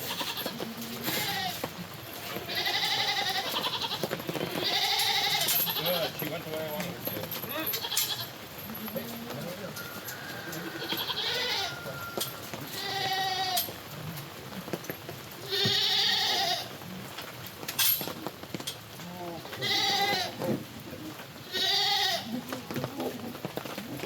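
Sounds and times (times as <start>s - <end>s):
goats bleating: 0.0s - 6.5s, 7.5s - 8.4s, 10.4s - 13.8s, 15.4s - 16.8s, 19.2s - 20.5s, 21.4s - 22.7s.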